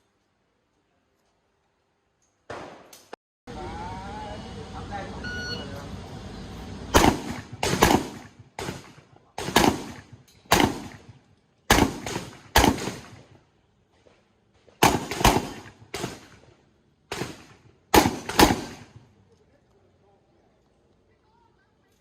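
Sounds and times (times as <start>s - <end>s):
shotgun shots: 2.5s - 2.9s, 6.9s - 13.4s, 14.8s - 16.4s, 17.1s - 19.0s.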